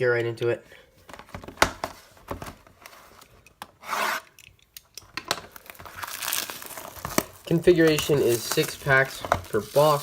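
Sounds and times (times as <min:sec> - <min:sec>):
cardboard scraping rub: 0:03.8 - 0:04.3.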